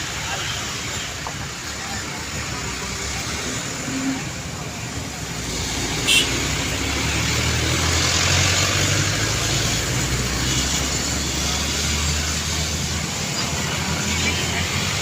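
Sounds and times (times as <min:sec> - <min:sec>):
heavy vehicle engine hum: 0:00.0 - 0:15.0
tyre and road noise: 0:00.0 - 0:15.0.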